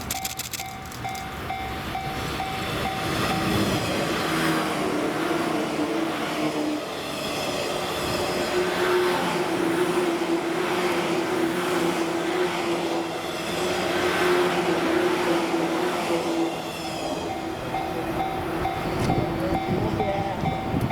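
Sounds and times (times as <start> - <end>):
train wheels rumbling over rail joints: 0.0 - 20.9
level crossing warning alarm: 0.1 - 5.4, 13.4 - 20.9.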